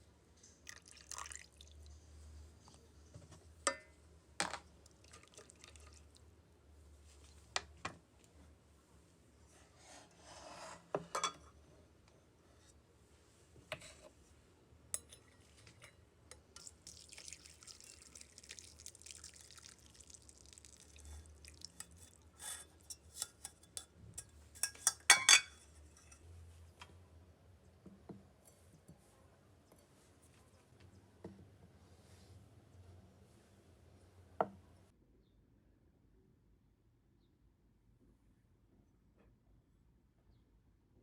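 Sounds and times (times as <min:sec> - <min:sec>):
liquid being poured: 0:00.6 - 0:01.9, 0:05.0 - 0:06.2, 0:16.6 - 0:22.2
glassware and utensils clinking: 0:21.8 - 0:26.2.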